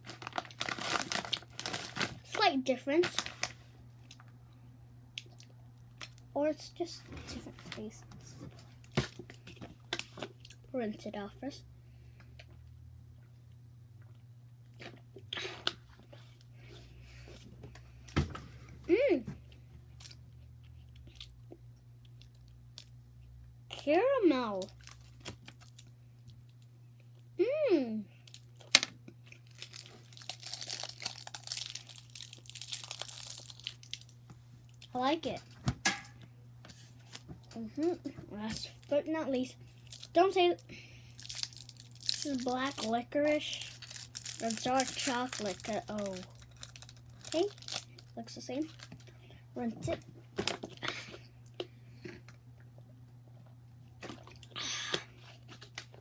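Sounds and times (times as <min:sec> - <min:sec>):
candy wrapper crinkling: 0:00.0 - 0:04.2, 0:24.6 - 0:25.9, 0:28.2 - 0:35.1, 0:39.6 - 0:49.2
steady low hum: 0:00.0 - 0:56.0.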